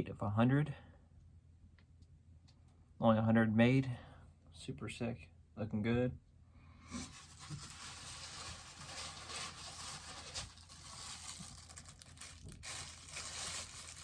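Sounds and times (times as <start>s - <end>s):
packaging rustling and crinkling: 7.0s - 14.0s.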